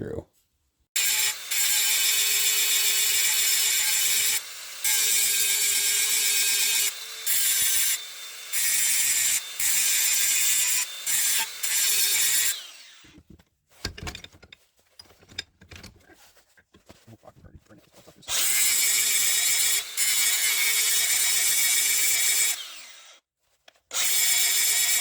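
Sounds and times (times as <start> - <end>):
power grinder grinding steel: 1.0 - 13.2, 18.3 - 23.2, 23.9 - 25.0.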